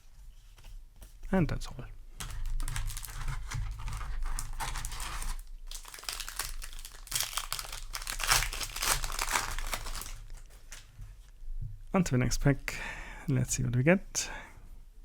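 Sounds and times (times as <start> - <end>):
foil wrapper crinkling: 2.2 - 10.9.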